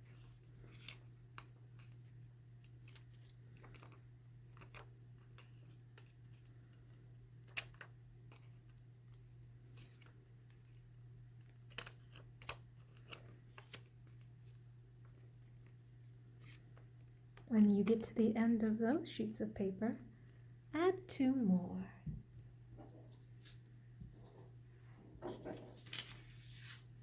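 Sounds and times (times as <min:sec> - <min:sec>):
paper crinkling: 0:00.1 - 0:18.1, 0:25.2 - 0:26.9.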